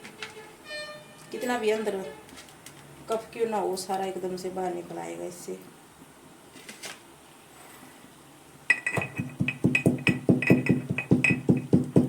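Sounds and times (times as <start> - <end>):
mortar and pestle pounding: 8.7 - 12.0.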